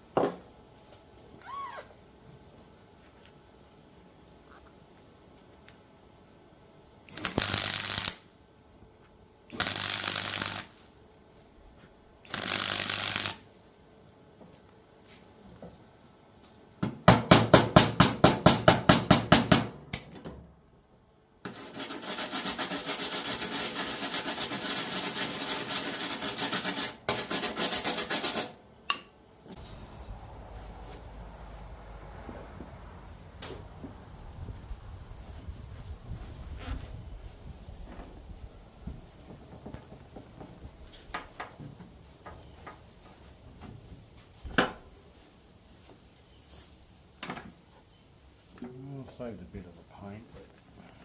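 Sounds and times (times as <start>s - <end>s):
welder arc buzzing: 7.1s - 8.3s, 9.5s - 10.9s, 12.3s - 13.5s.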